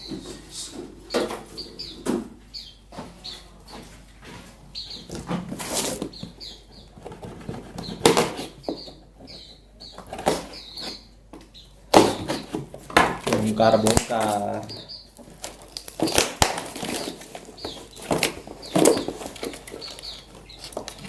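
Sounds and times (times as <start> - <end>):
birds flapping in a box: 2.9 - 8.9, 9.9 - 11.0, 11.9 - 21.0.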